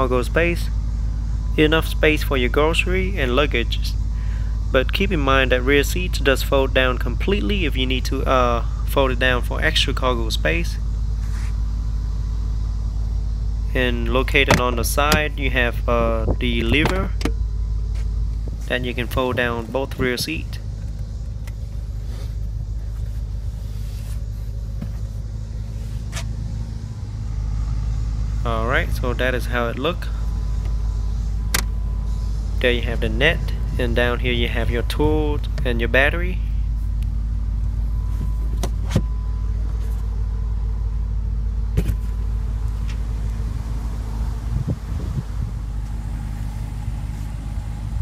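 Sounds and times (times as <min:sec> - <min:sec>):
car engine idling: 0:00.0 - 0:48.0
steady low rumble: 0:00.0 - 0:48.0
faint rustles: 0:11.1 - 0:11.9, 0:20.6 - 0:26.9
seat latch clicks: 0:31.5 - 0:31.7.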